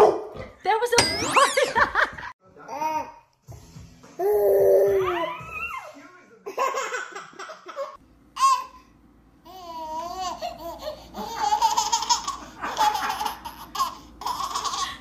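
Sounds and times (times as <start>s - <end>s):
child squealing: 4.5s - 5.9s.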